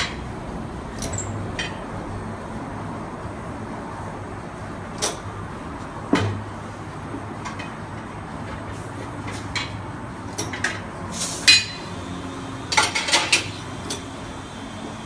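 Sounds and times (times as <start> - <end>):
metal tools clanking on wheel: 1.0 - 1.8, 11.5 - 11.9, 12.8 - 14.0.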